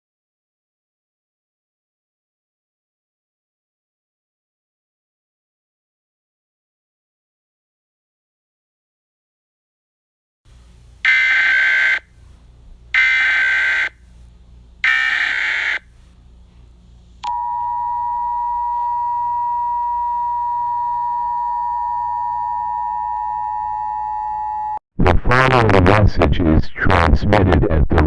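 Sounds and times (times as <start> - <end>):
buzzy data bursts: 11.1 - 12.0, 13.0 - 14.0, 14.8 - 15.8
low hum: 16.0 - 26.4.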